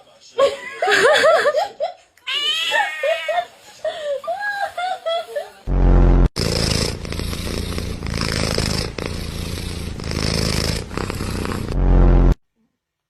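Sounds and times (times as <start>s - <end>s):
cat purring: 6.4s - 12.4s.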